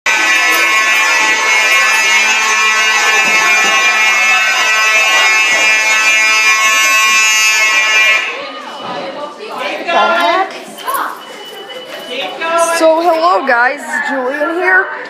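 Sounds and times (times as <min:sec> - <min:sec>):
fire alarm steady tone: 0:00.1 - 0:09.0.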